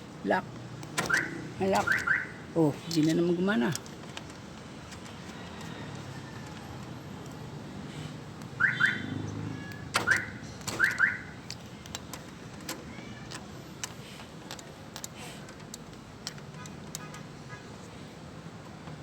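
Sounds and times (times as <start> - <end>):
vehicle alarm chirping: 1.0 - 2.4, 8.6 - 9.2, 10.0 - 11.4.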